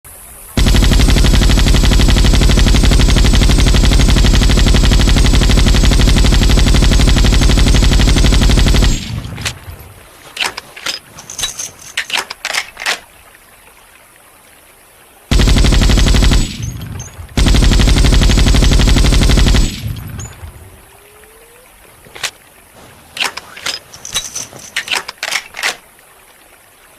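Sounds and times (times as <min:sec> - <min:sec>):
machine gun firing bursts: 0:00.6 - 0:09.8, 0:15.3 - 0:20.4.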